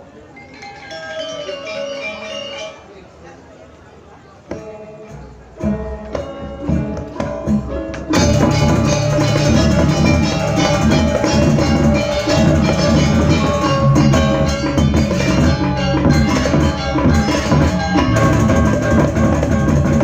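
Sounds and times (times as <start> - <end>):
gamelan ensemble playing: 0.3 - 3.2, 5.0 - 20.0
drums: 4.4 - 20.0
struck gong-chime notes: 8.2 - 20.0.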